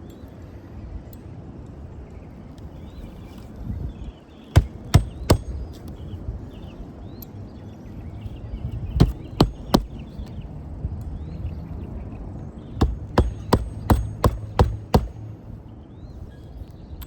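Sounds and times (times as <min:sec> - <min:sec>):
hammer blows on nail: 0:04.6 - 0:05.6, 0:09.0 - 0:10.0, 0:12.8 - 0:15.3.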